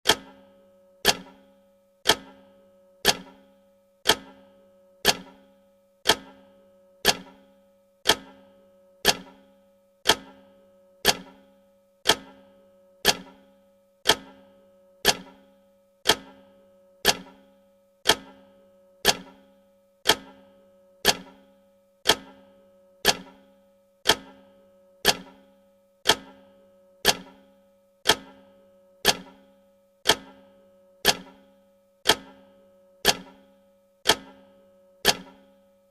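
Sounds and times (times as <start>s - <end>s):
clock ticking: 0.1s - 0.4s, 1.0s - 5.4s, 6.0s - 11.4s, 12.0s - 13.4s, 14.0s - 19.4s, 20.0s - 21.4s, 22.0s - 23.4s, 24.0s - 35.6s.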